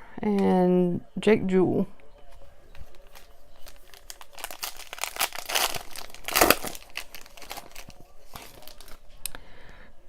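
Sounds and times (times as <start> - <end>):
foil wrapper tearing and crinkling: 3.0 - 9.0.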